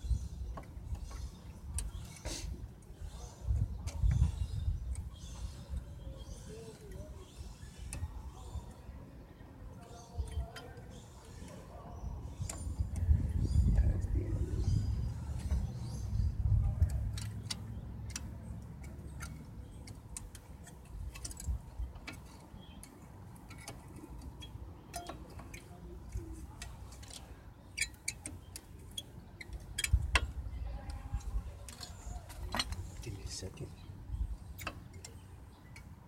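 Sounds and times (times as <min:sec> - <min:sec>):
metallic clicks and taps: 0:16.7 - 0:31.0.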